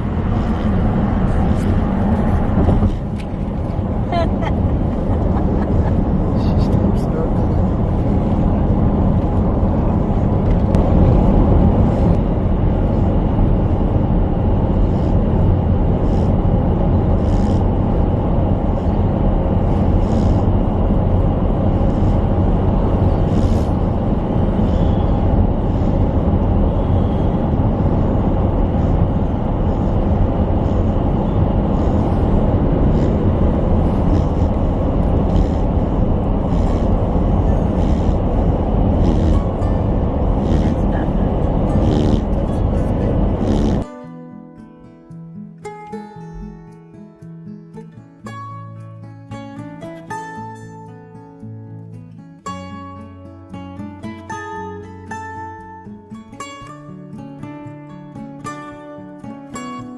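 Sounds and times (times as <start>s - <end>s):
truck engine and tyre rumble: 0.0s - 43.9s.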